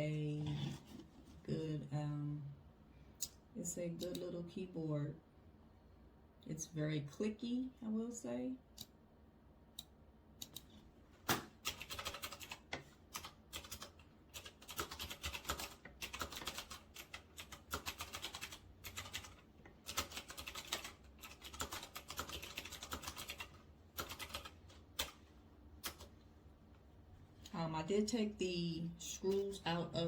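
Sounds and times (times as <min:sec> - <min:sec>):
mechanical keyboard typing: 0:11.3 - 0:25.2, 0:25.8 - 0:26.1.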